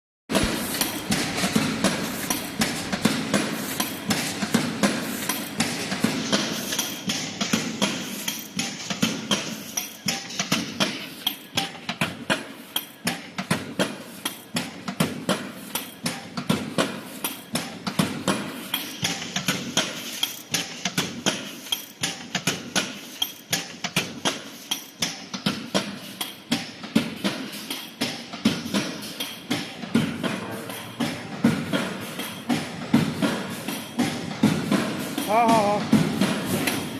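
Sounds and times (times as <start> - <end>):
steady machine noise: 0.3 - 9.0, 29.8 - 36.9.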